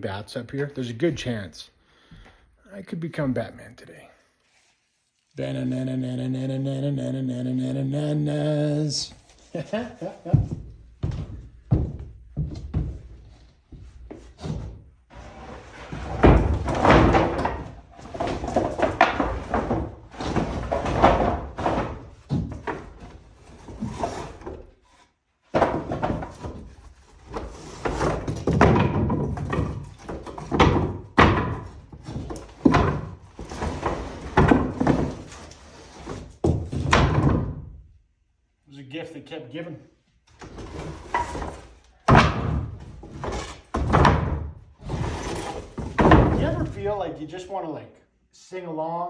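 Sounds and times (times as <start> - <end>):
wooden boards clattering and thudding: 9.8 - 24.7, 25.5 - 37.8, 40.3 - 47.0.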